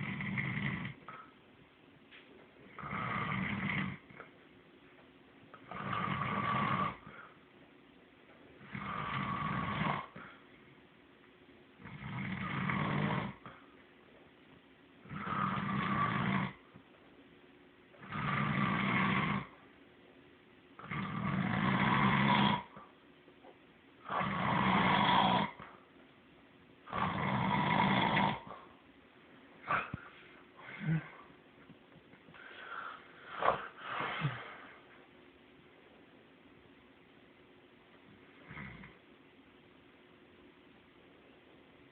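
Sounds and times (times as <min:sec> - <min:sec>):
person snoring: 0:00.0 - 0:01.3, 0:02.7 - 0:04.2, 0:05.6 - 0:07.3, 0:08.6 - 0:10.4, 0:11.8 - 0:13.6, 0:15.0 - 0:16.6, 0:18.0 - 0:19.6, 0:20.8 - 0:22.8, 0:24.0 - 0:25.6, 0:26.9 - 0:28.6, 0:30.6 - 0:31.3, 0:32.5 - 0:34.8, 0:38.4 - 0:39.0.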